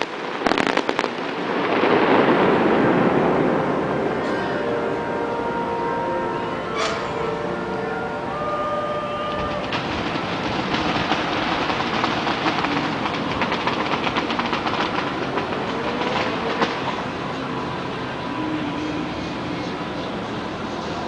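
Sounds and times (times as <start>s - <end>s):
fireworks whistling: 0.0s - 3.1s, 6.7s - 17.1s
fireworks crackling: 0.0s - 4.8s, 6.8s - 19.4s.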